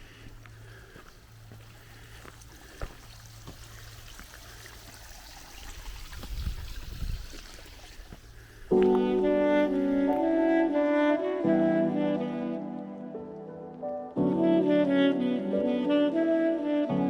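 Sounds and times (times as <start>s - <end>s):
stream water running: 0.0s - 10.6s.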